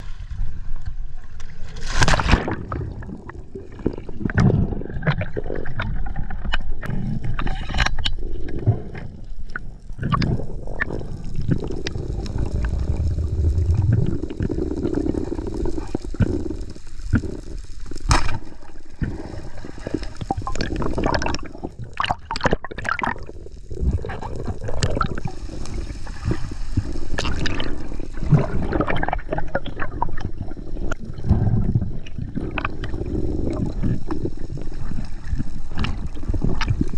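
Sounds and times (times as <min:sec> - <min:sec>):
water sloshing and gurgling: 0:00.0 - 0:36.9.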